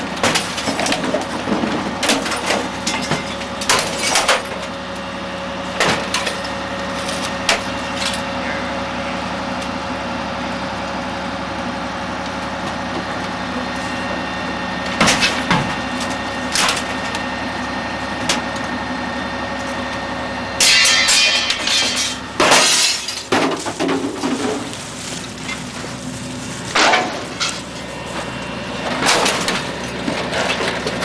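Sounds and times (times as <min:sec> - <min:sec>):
trash cracking and crunching: 0:00.0 - 0:04.7, 0:14.8 - 0:18.7, 0:20.6 - 0:31.0
garbage truck compactor drone: 0:00.0 - 0:31.0.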